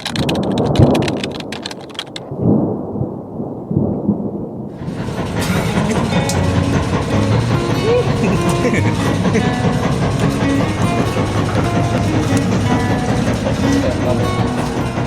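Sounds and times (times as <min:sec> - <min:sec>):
sharp crackles: 0:00.0 - 0:07.7
deep rumbling: 0:00.0 - 0:15.0.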